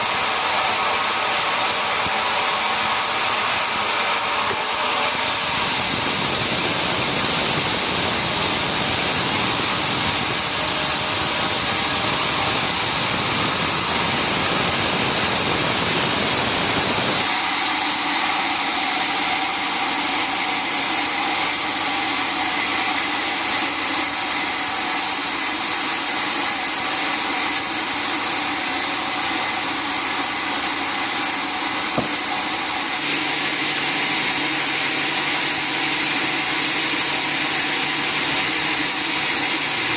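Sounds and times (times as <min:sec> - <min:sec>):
steady machine hum: 0:00.0 - 0:22.4
sawmill machinery running: 0:00.0 - 0:39.9.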